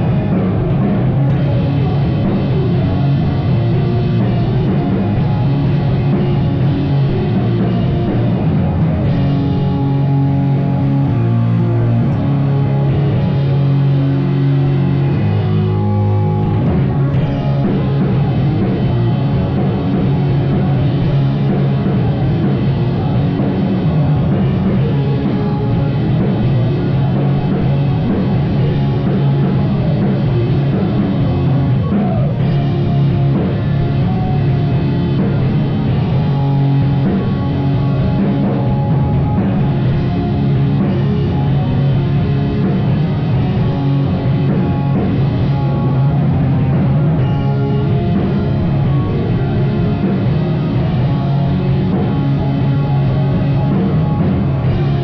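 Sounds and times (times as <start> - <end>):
amplified guitars: 0.0 - 55.0
drum kit: 0.0 - 55.0.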